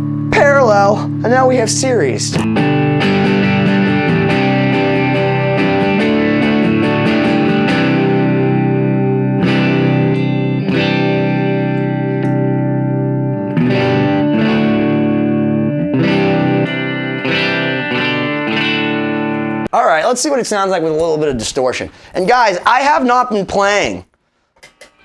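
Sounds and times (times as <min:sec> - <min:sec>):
electric guitar notes and chords: 0:00.0 - 0:19.7.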